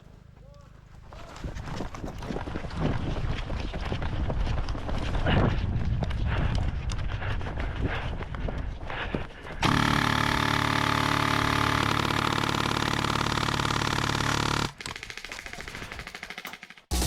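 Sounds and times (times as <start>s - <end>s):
loud mechanical buzz: 9.6s - 14.7s.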